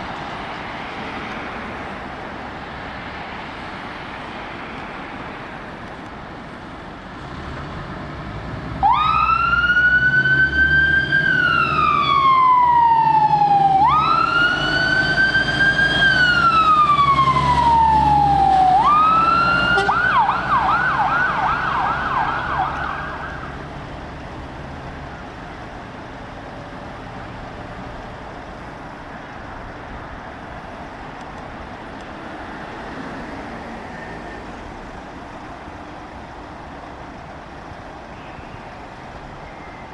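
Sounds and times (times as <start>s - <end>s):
engine rumbling: 0.0s - 39.9s
traffic noise: 0.0s - 39.9s
fire engine siren: 8.7s - 23.6s.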